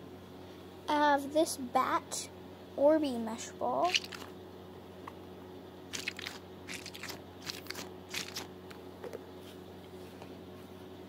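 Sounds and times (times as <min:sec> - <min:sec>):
stress ball squishing: 0:03.9 - 0:04.3, 0:05.9 - 0:08.5.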